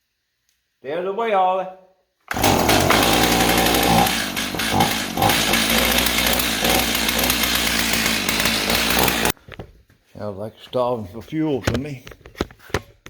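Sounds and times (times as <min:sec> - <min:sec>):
chainsaw engine running: 0:02.3 - 0:09.4.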